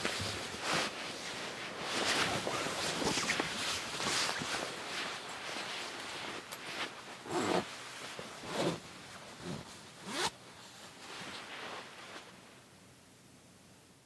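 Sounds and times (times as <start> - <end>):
zipper pulled: 7.3 - 7.7, 8.4 - 8.8, 9.4 - 10.3.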